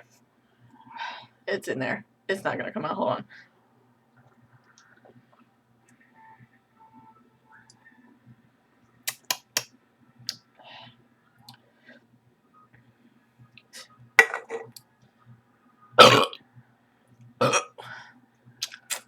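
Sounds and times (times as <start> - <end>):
woman burping: 16.0 - 16.4, 17.4 - 17.8.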